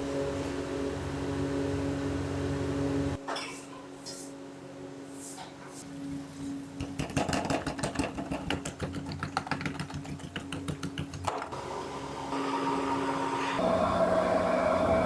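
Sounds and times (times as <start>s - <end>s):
rapid irregular tapping: 6.8s - 11.5s
low hum: 11.6s - 15.0s.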